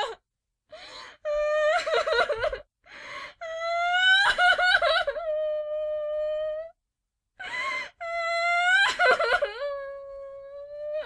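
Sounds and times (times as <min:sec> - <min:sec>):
woman crying and sobbing: 0:01.2 - 0:02.7, 0:03.4 - 0:06.5, 0:07.4 - 0:11.0.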